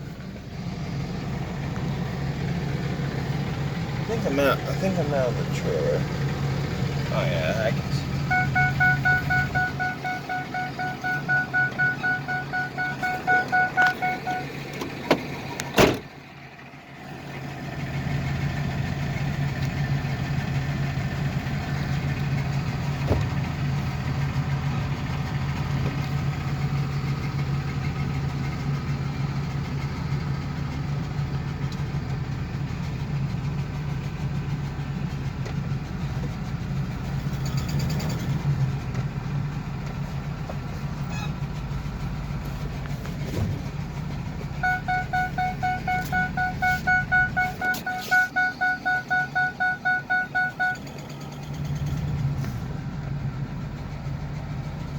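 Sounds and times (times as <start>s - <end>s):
van engine humming: 0.0s - 54.9s
van warning chime beeping: 7.8s - 15.0s, 44.5s - 51.0s.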